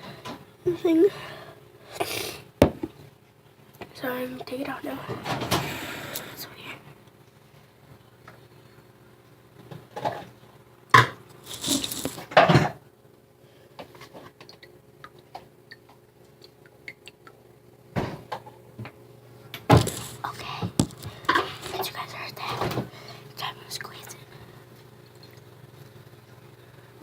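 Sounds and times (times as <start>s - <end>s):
clatter of handled objects: 11.4s - 12.4s, 19.7s - 21.9s.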